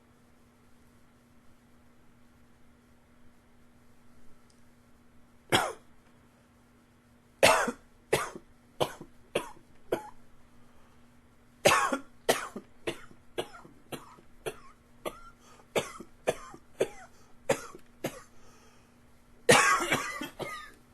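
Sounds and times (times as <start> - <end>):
man coughing: 5.5 - 5.8, 11.7 - 18.3, 19.5 - 20.8.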